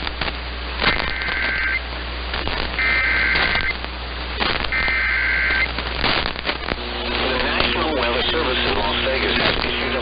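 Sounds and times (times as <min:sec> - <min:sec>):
radio static with crackles: 0:00.0 - 0:10.0
buzzy two-tone digital bursts: 0:00.8 - 0:01.8, 0:02.4 - 0:03.8, 0:04.4 - 0:10.0.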